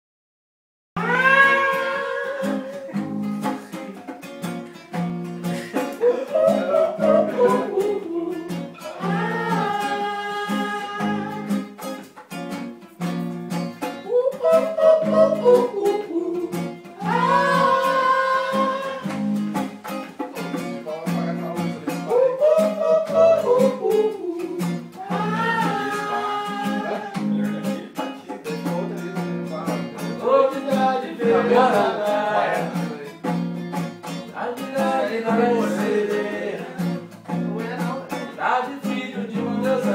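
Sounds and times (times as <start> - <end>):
person singing: 1.0 - 4.2, 5.6 - 11.8, 14.0 - 19.4, 21.9 - 33.3, 34.3 - 39.9
acoustic guitar strumming: 1.0 - 39.9.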